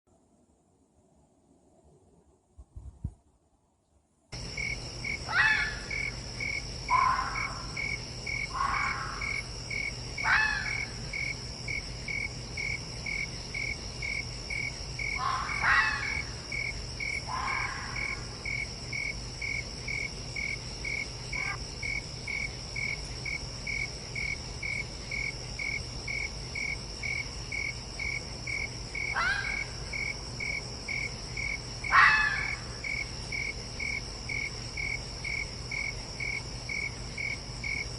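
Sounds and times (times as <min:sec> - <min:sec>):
crickets chirping: 0:04.3 - 0:37.9
high insect drone: 0:04.3 - 0:37.9
fox barking: 0:05.3 - 0:06.0, 0:06.9 - 0:07.8, 0:08.5 - 0:09.4, 0:10.2 - 0:10.9, 0:15.2 - 0:16.3, 0:17.3 - 0:18.2, 0:21.4 - 0:21.6, 0:29.1 - 0:29.8, 0:31.9 - 0:32.7.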